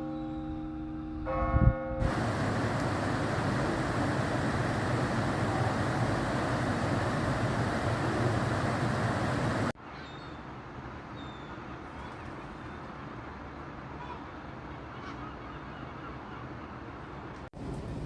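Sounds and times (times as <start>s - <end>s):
loud steady rushing noise: 2.0s - 9.8s
murmur of distant voices: 2.1s - 9.7s.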